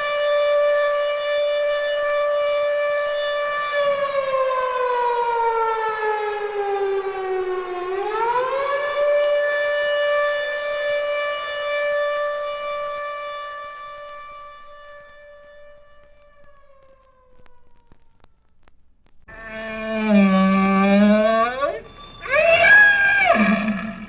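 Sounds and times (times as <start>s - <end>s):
air raid siren: 0.0s - 18.6s, 19.3s - 24.0s.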